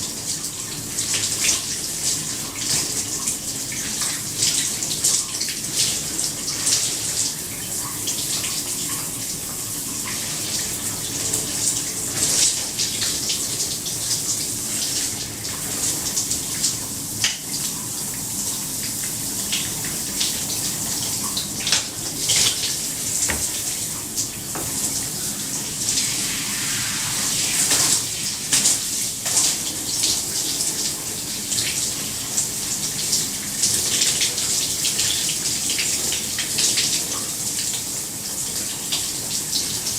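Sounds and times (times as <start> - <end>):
shower spray running: 18.5 - 34.2.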